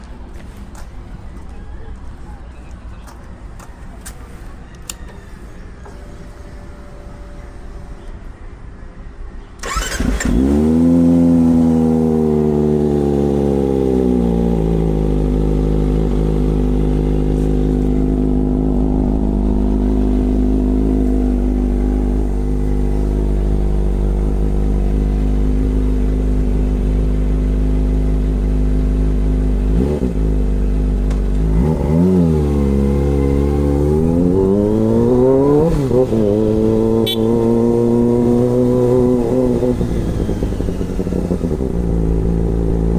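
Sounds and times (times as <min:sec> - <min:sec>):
engine throttle blips: 0:09.6 - 0:10.8, 0:12.5 - 0:42.9
motorcycle engine starting and idling: 0:09.6 - 0:42.9.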